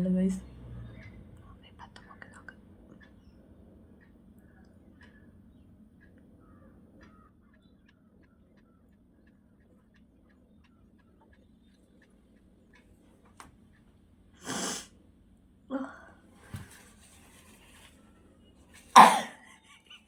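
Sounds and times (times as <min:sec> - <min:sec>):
woman sneezing: 0:19.0 - 0:19.4.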